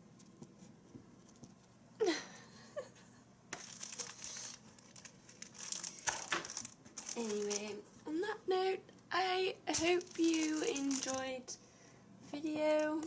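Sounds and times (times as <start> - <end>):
packaging crinkling and rustling: 3.5 - 7.8, 9.7 - 11.4.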